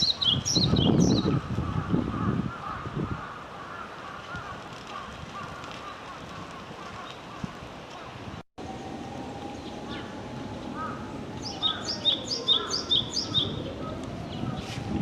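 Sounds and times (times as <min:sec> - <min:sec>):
songbird calling: 0:00.0 - 0:01.4, 0:09.5 - 0:14.8
outdoor background noise: 0:00.0 - 0:15.0.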